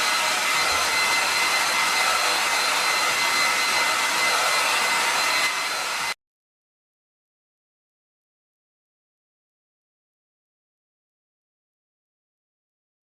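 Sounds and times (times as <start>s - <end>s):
hair dryer running: 0.0s - 6.2s.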